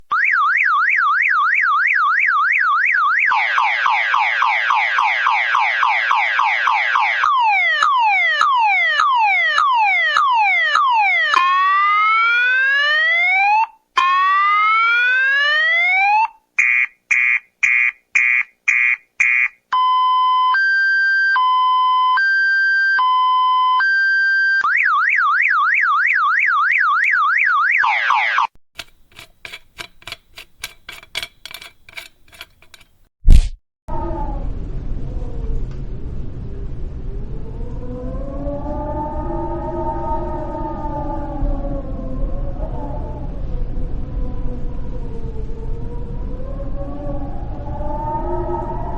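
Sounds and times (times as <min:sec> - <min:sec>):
car alarm siren: 0:00.1 - 0:28.5, 0:46.0 - 0:48.9.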